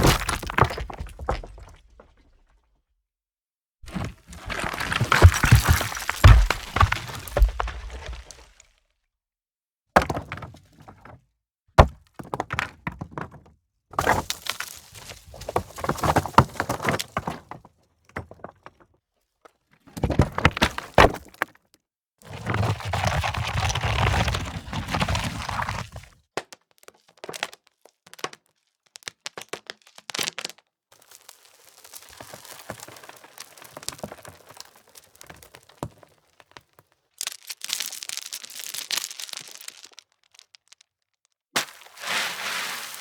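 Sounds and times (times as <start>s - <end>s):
heavy stone rolling: 0.0s - 2.2s, 3.8s - 8.5s
stones dropping and bouncing: 0.0s - 2.3s, 3.8s - 8.6s, 14.0s - 17.4s, 20.0s - 21.5s, 31.8s - 36.0s, 37.2s - 40.8s, 41.6s - 43.0s
rocks rattling and tumbling: 0.0s - 2.5s, 3.8s - 8.7s, 14.0s - 18.8s, 20.0s - 21.5s, 22.4s - 26.1s, 28.1s - 43.0s.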